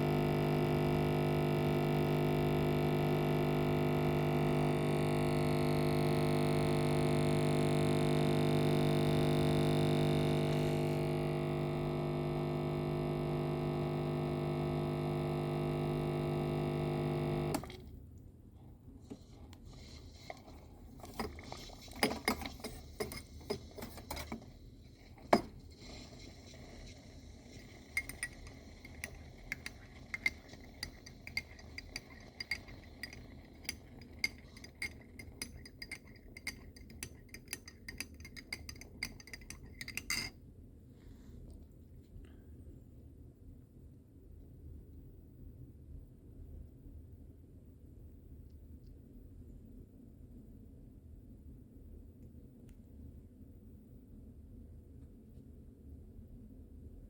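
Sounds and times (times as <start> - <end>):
coffee machine humming: 0.0 - 18.0, 19.1 - 40.3.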